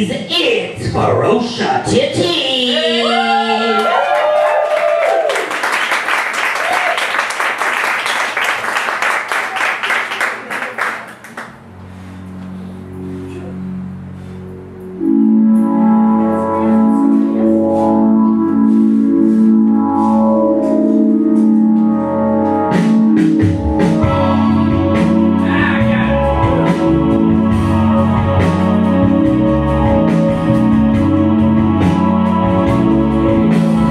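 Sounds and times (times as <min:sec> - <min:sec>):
held keyboard chords: 0:11.2 - 0:33.9
bass line: 0:11.4 - 0:33.9
steady beat: 0:15.4 - 0:33.9.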